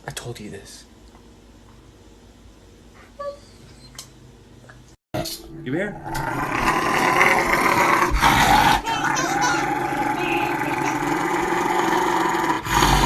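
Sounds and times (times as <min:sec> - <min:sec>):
animal growling: 0:06.0 - 0:13.0.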